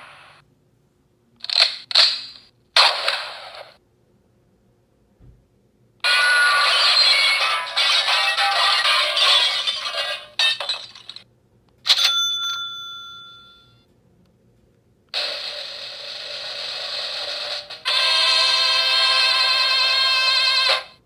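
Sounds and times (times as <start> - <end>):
bell-like ding: 12.0 - 13.8.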